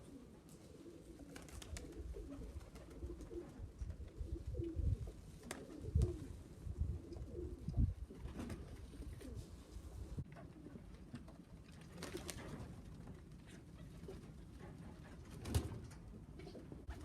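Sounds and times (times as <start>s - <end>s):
pigeons cooing: 0.0s - 11.0s.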